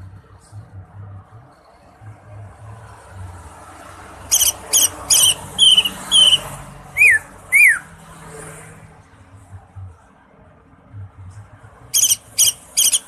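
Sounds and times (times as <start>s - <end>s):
bird singing chips and whistles: 4.3s - 7.9s, 12.0s - 13.0s.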